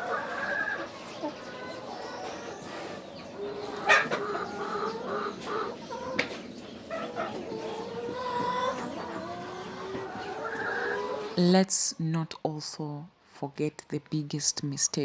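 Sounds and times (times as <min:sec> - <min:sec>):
chickens clucking: 0:00.0 - 0:12.0.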